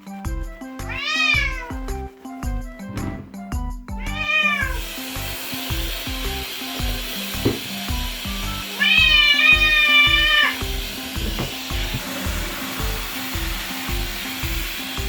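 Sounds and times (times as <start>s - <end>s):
kitten meowing: 0.9s - 1.8s, 4.0s - 4.8s, 8.8s - 10.6s
running water hissing: 4.1s - 15.0s.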